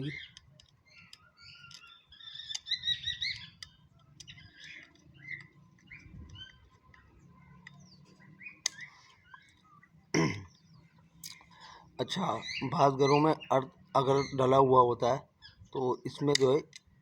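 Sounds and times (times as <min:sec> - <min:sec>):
sharp clicks: 0:00.0 - 0:09.6, 0:16.1 - 0:17.0
small birds chirping: 0:00.0 - 0:17.0.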